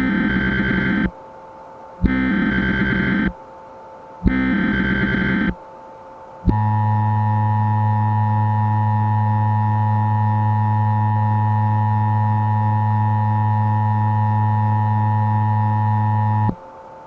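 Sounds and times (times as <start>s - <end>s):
distorted two-tone alert: 2.0s - 3.3s, 4.3s - 5.6s.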